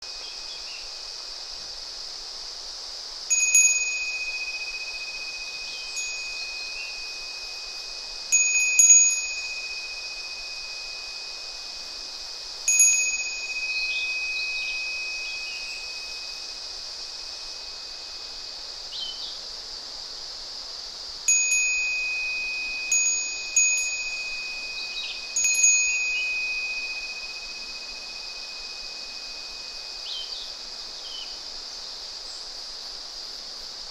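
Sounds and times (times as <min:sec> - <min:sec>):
babbling stream: 0:00.0 - 0:33.9
cicada drone: 0:00.0 - 0:33.9
wind bell ringing: 0:03.3 - 0:18.5, 0:21.3 - 0:30.9
faint bird chirps: 0:18.9 - 0:19.4, 0:24.7 - 0:31.4.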